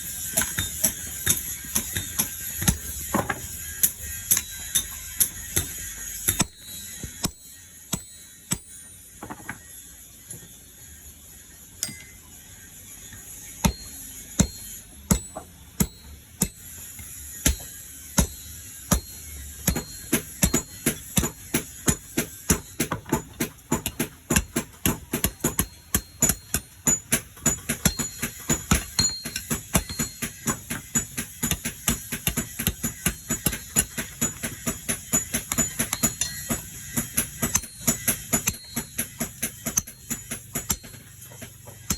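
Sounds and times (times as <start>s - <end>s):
hammer striking hot steel on anvil: 0.0s - 9.7s, 11.8s - 12.4s, 13.1s - 41.9s.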